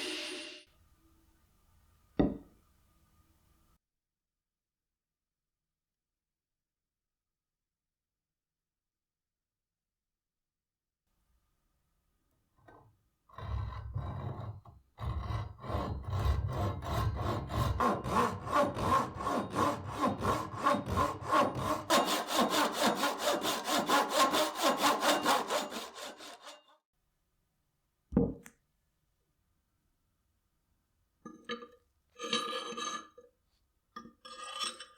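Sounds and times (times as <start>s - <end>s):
short knock: 2.2s - 2.5s
hand saw cutting wood: 13.3s - 26.8s.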